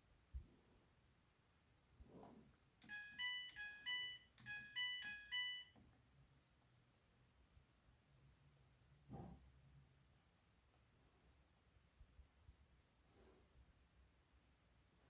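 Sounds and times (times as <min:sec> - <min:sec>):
washing machine beeping melody: 0:02.8 - 0:05.8.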